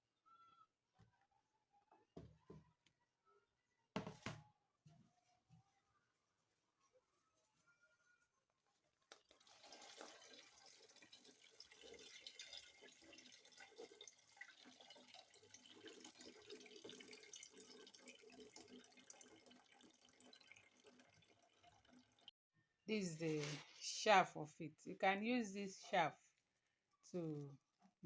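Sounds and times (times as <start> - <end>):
liquid trickling and dripping: 9.2 - 22.3.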